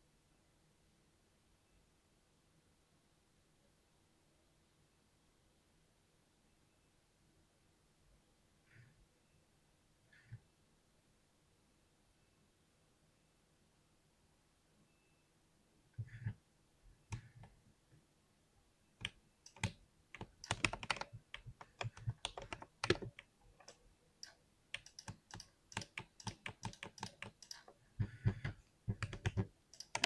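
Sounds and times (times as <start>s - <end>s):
keyboard typing: 19.0s - 30.0s.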